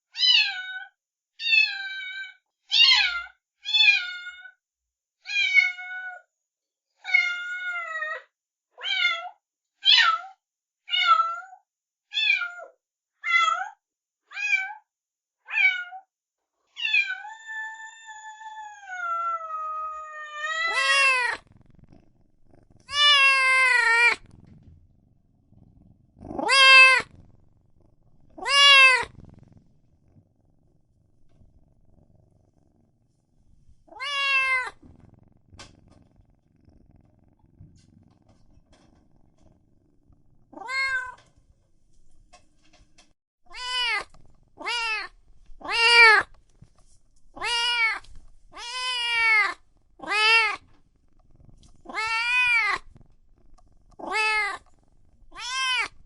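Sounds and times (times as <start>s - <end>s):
cat meowing: 0.2s - 4.5s, 16.8s - 21.5s, 22.8s - 24.3s, 26.2s - 27.1s, 28.3s - 29.2s, 33.9s - 34.8s, 40.6s - 41.2s, 43.5s - 46.3s, 47.4s - 50.6s, 51.8s - 52.9s, 54.0s - 54.7s, 55.3s - 56.0s.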